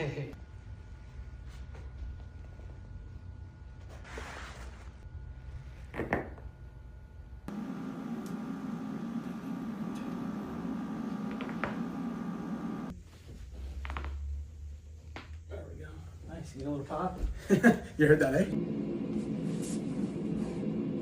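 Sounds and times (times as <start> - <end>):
steady low hum: 0.0 - 21.0
rustling of hands and clothing: 12.9 - 15.4.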